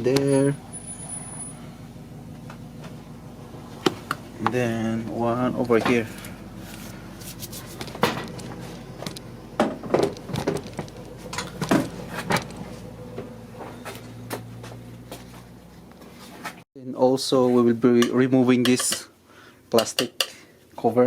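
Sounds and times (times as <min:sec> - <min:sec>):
low hum: 0:00.0 - 0:16.6.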